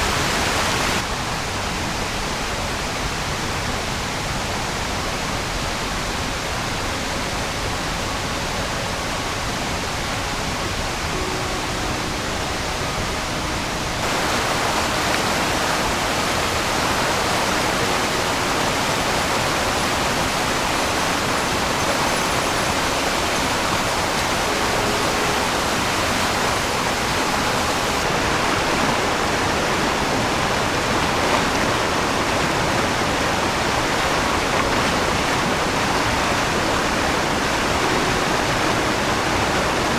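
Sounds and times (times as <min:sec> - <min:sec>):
water rushing over rocks: 0:00.0 - 0:01.1, 0:09.7 - 0:39.9.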